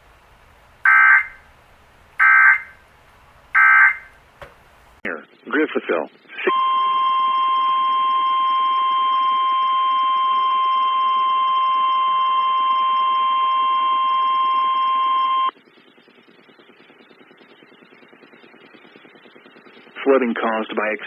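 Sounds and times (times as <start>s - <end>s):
steady high warning tone: 0.0s - 4.3s
faint static: 0.0s - 5.0s.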